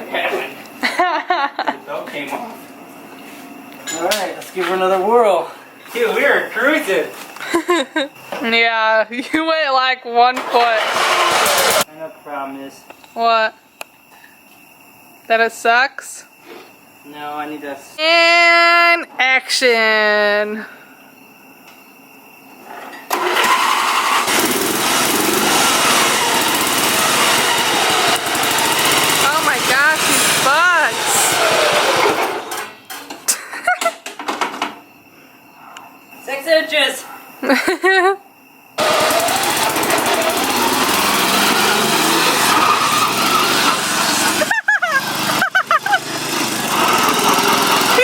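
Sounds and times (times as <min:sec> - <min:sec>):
lawn mower engine revving: 0:10.4 - 0:11.9, 0:23.1 - 0:32.8, 0:38.8 - 0:48.0.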